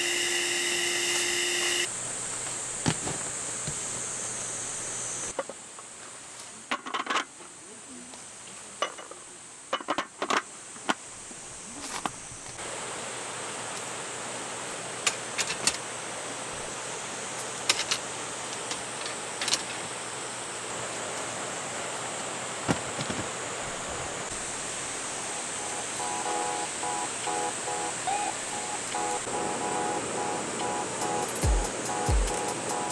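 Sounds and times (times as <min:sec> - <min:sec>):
mountain stream rushing: 0:20.1 - 0:32.9.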